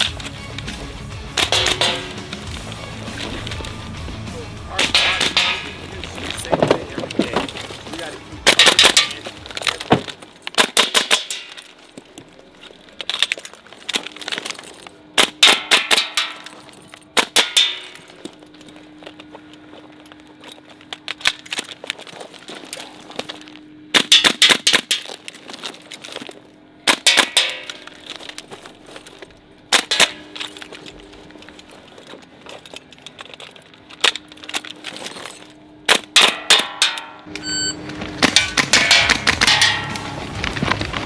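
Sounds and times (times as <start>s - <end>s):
music: 0.0s - 9.5s.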